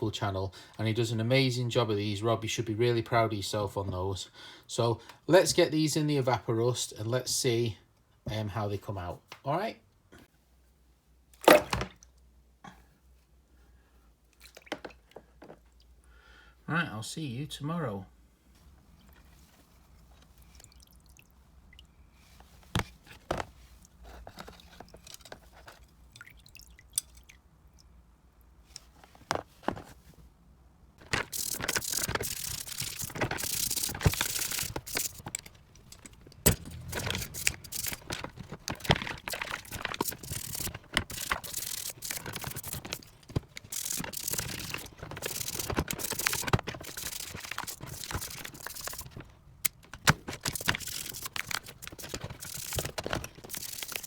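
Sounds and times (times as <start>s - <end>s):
pliers clinking: 31.0s - 53.8s.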